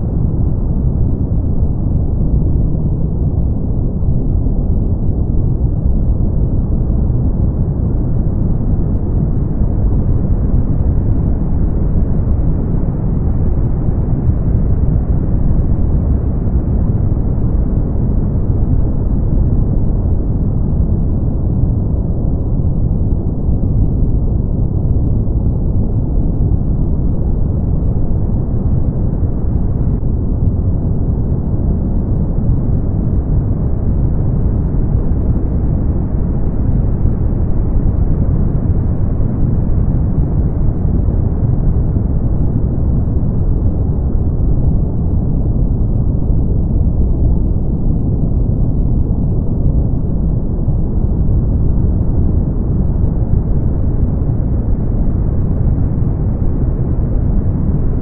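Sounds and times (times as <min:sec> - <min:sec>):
deep brown noise hiss: 0:00.0 - 0:58.0.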